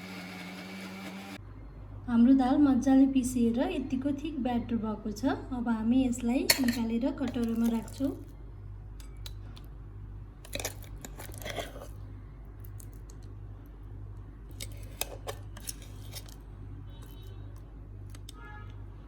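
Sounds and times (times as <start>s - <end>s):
spoon scraping batter from jar: 10.5s - 12.1s, 14.5s - 17.3s.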